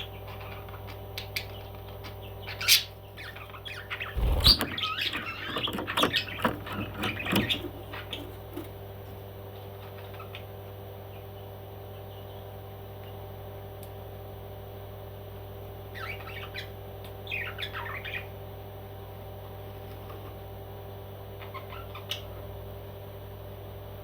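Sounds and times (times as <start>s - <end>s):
low steady hum: 1.4s - 9.7s
parrot squawking: 2.6s - 5.5s.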